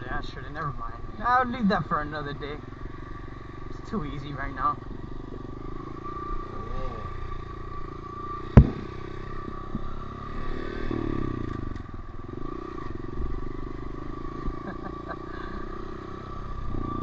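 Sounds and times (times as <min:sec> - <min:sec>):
motorcycle engine running: 0:00.0 - 0:17.0
sharp knock: 0:08.6 - 0:08.9.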